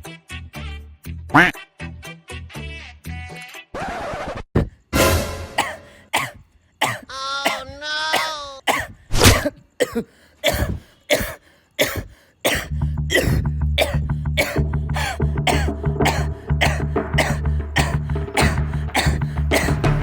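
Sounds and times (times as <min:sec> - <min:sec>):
music with steady beat: 0:05.0 - 0:05.6, 0:14.0 - 0:20.0
person coughing: 0:05.5 - 0:19.8
drawn-out voiced sounds: 0:07.0 - 0:08.7.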